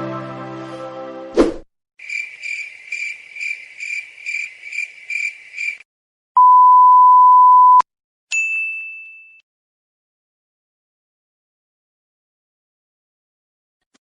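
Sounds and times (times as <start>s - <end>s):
cricket-like chirping: 2.0s - 5.8s
censor bleep: 6.4s - 7.8s
ringing ding: 8.3s - 9.4s.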